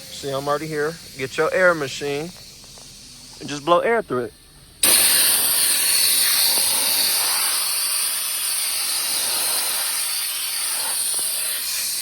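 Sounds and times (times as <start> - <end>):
compressed air hose hissing: 0.0 - 12.0.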